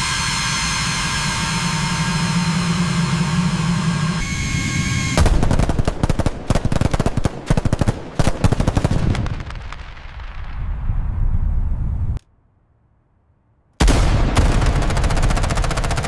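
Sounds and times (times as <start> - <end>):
steady engine hum: 0.0 - 7.4
aircraft cannon firing bursts: 4.6 - 10.0, 13.8 - 16.0.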